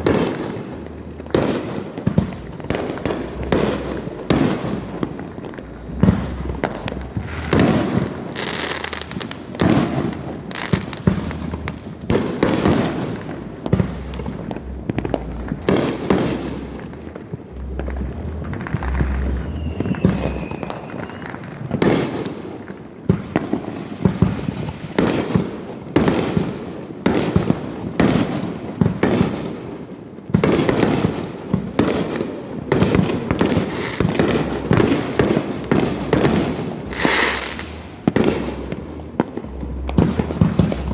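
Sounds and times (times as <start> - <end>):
firework whistle: 0.0 - 22.2, 32.8 - 40.9
fireworks bangs: 0.0 - 40.9
fireworks crackling: 0.0 - 40.9.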